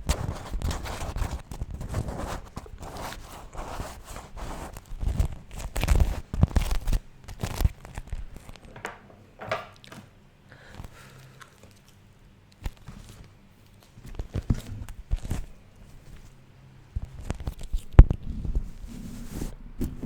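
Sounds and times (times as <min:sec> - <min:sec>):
wax wrap crinkling: 0:00.0 - 0:08.7.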